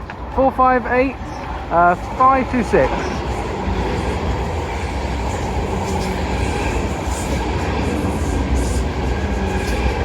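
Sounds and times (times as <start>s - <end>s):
train running past: 0.0s - 10.0s.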